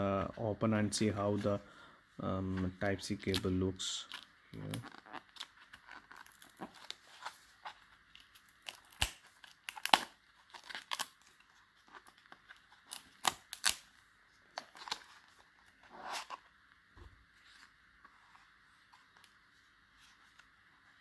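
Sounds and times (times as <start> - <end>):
packaging tearing and crinkling: 4.1 - 14.0, 14.6 - 16.4.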